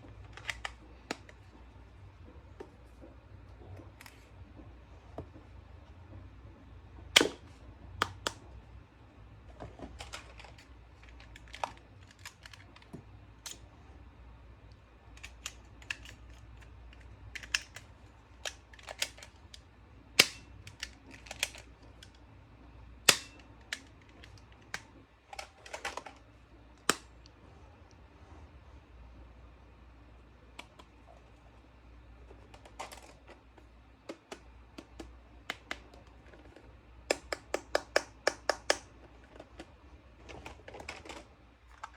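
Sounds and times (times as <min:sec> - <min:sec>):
plastic toys clicking: 0:10.0 - 0:13.6, 0:15.1 - 0:19.6, 0:34.1 - 0:41.9.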